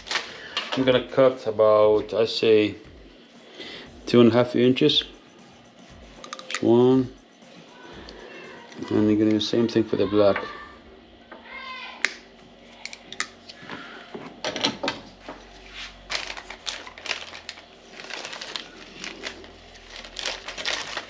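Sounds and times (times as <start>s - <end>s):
light plastic rustle: 15.5s - 21.0s.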